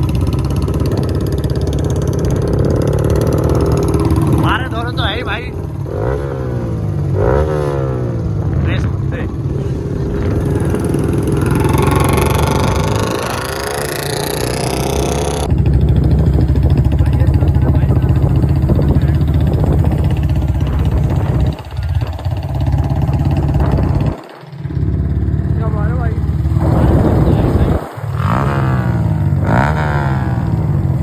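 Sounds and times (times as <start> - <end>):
motorcycle engine running: 0.0 - 31.0
wind rumble on microphone: 7.9 - 13.9, 15.5 - 29.7.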